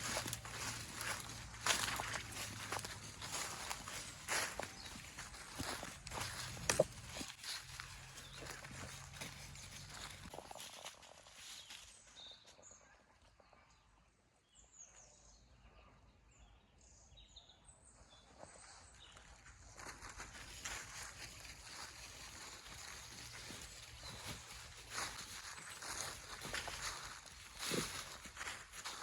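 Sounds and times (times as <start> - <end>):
rustling through undergrowth: 0.0 - 12.5, 19.4 - 29.0
small birds chirping: 0.0 - 19.4, 21.0 - 29.0.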